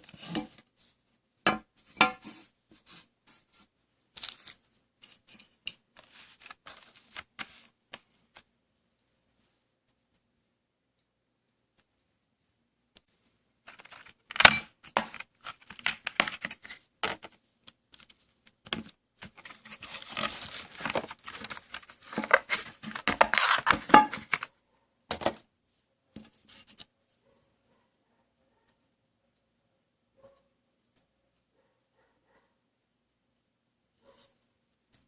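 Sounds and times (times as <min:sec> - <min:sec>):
packaging crinkling and tearing: 0:19.2 - 0:24.5.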